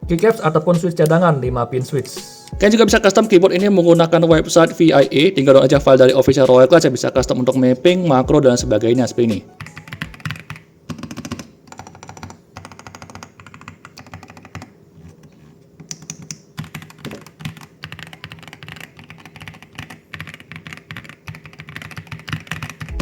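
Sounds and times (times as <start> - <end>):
typing on mechanical keyboard: 9.6 - 14.7, 15.8 - 23.0.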